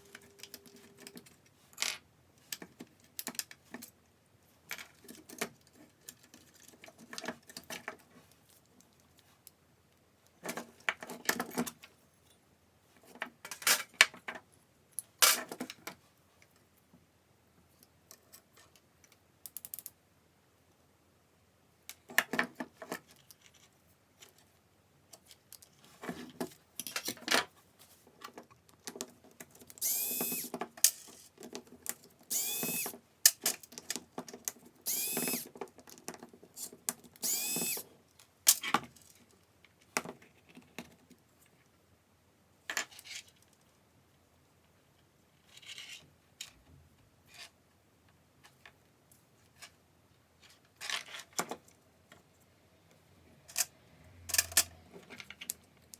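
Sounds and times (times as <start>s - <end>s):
clicks and knocks of handling parts: 21.9s - 41.2s, 53.5s - 55.9s
cordless power tool motor whirring: 29.8s - 30.5s, 32.3s - 32.9s, 34.9s - 35.5s, 37.2s - 37.8s.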